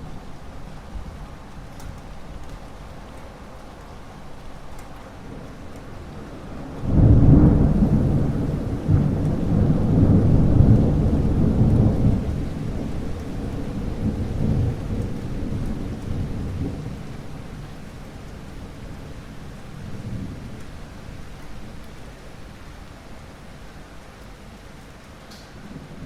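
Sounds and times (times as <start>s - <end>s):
steady rain: 0.0s - 26.0s
thunderclap rumbling: 5.2s - 18.3s.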